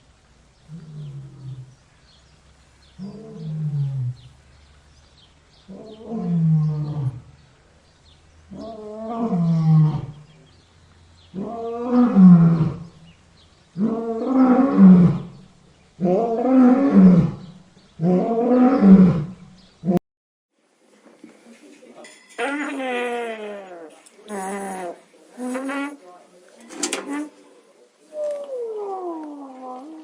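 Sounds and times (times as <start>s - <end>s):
lion roaring: 0.7s - 1.8s, 3.0s - 4.3s, 5.7s - 7.3s, 8.5s - 10.3s, 11.3s - 13.0s, 13.8s - 15.4s, 16.0s - 20.0s.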